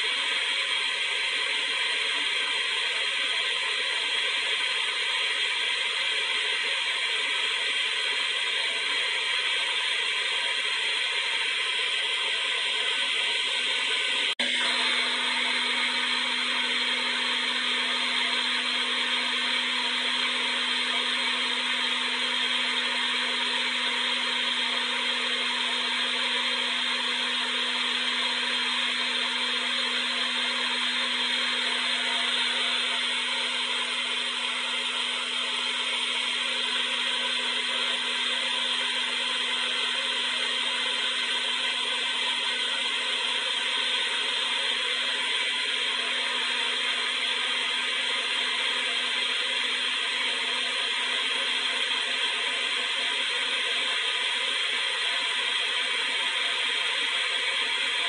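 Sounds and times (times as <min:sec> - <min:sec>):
hair dryer blowing air: 0:00.0 - 0:58.0
steady low hum: 0:14.3 - 0:51.6.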